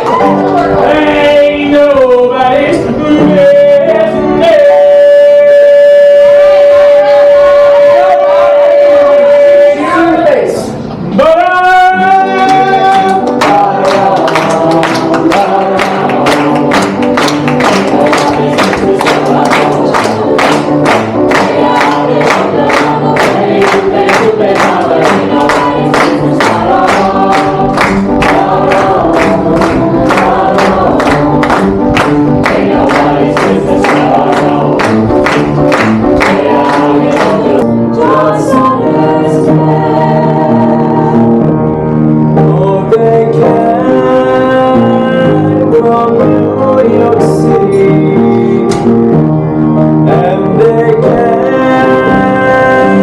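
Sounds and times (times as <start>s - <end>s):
singing voices: 0.0s - 49.2s, 50.0s - 53.0s
instruments playing: 11.9s - 53.0s
steady music beat: 16.4s - 37.6s.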